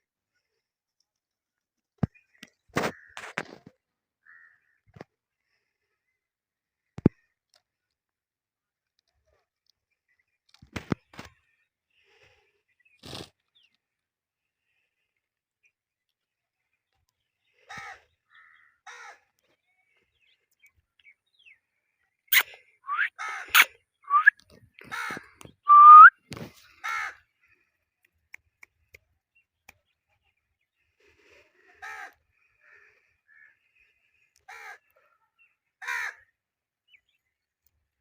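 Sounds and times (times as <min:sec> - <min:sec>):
parrot rising whistles: 0:22.3 - 0:24.3, 0:25.7 - 0:26.1
parrot squawking: 0:22.3 - 0:24.3, 0:25.7 - 0:26.1.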